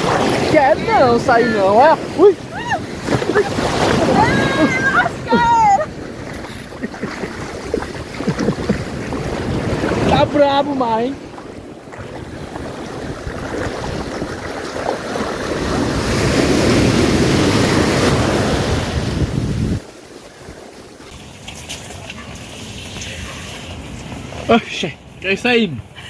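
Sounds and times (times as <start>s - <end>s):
wind buffeting microphone: 0.0s - 20.8s
sea waves breaking: 0.0s - 26.0s.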